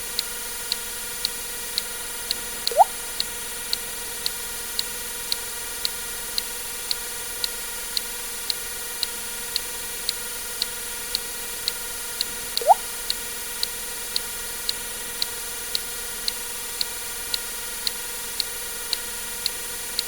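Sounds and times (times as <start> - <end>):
sharp ticks: 0.7 - 13.2
water drip plop: 2.7 - 3.0, 12.6 - 12.9.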